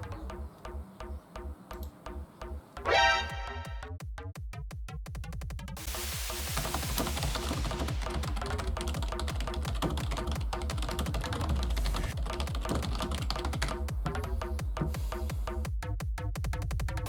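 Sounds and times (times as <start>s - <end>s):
electronic dance music: 2.9s - 3.9s.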